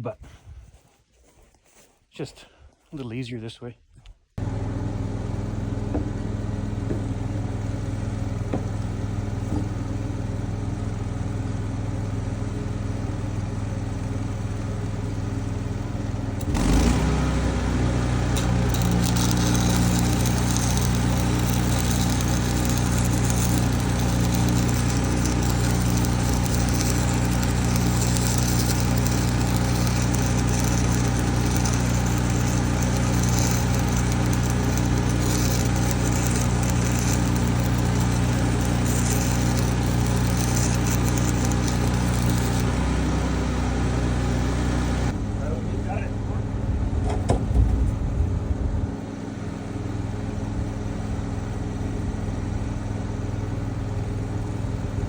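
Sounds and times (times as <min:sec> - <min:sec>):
engine running: 0:04.4 - 0:55.0
rough high hiss: 0:18.4 - 0:42.7.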